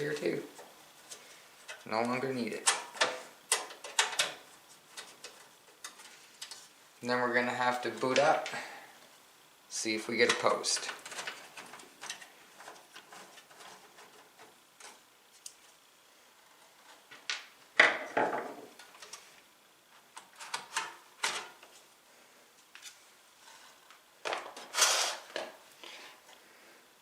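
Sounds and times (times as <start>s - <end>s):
computer parts clicking and knocking: 2.6s - 6.1s
scrape: 23.4s - 23.8s, 24.7s - 26.2s.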